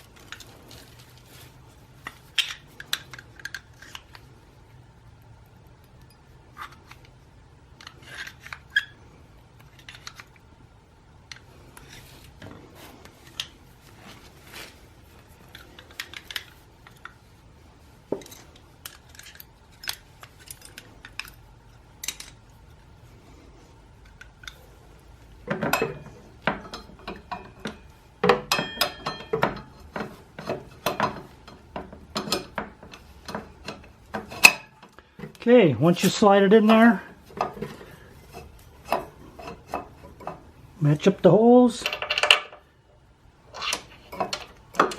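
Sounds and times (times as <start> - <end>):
metal clinks and taps: 25.5 - 33.8.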